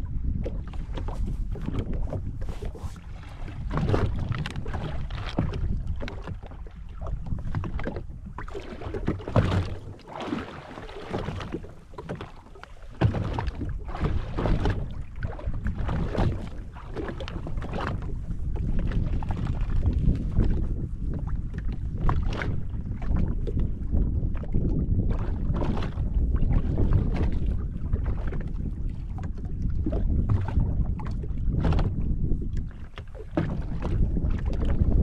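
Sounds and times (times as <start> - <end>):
water slapping against hull: 0.0 - 35.0
wind buffeting microphone: 0.0 - 35.0.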